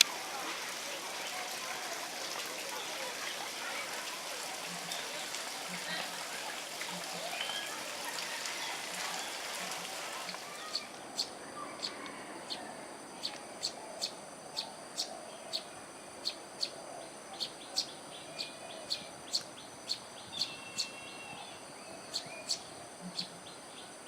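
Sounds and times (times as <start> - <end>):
birds chirping: 7.2 - 24.0.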